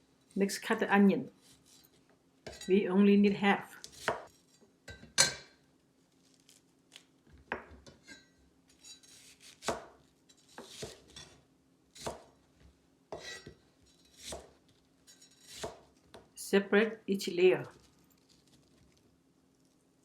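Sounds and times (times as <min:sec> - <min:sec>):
knife slicing onion: 0:03.8 - 0:04.5, 0:08.8 - 0:11.4, 0:12.0 - 0:12.4, 0:13.1 - 0:16.2.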